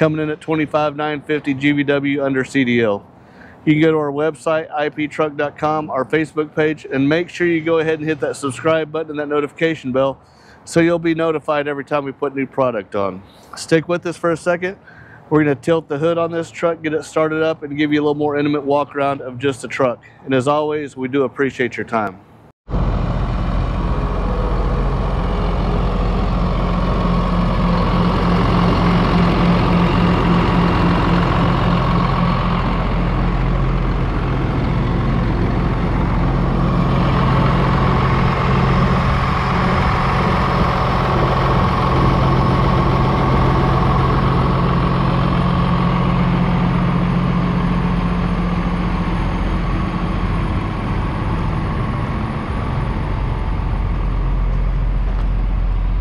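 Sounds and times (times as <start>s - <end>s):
diesel truck engine idling: 22.7s - 56.0s.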